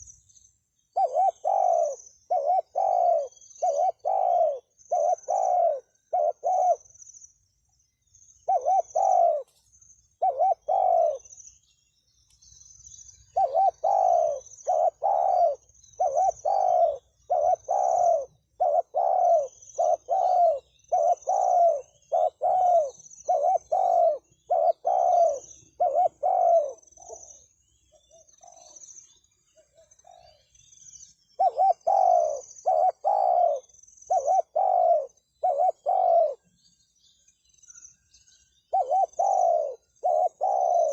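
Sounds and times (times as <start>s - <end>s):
dove cooing: 0.9s - 6.9s, 8.4s - 9.5s, 10.2s - 11.3s, 13.3s - 27.4s, 29.6s - 30.4s, 31.4s - 36.4s, 38.7s - 40.9s.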